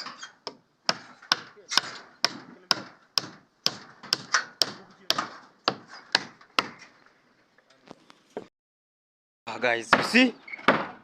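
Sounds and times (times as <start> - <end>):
hammer striking timber: 0.4 - 6.8, 9.8 - 11.0.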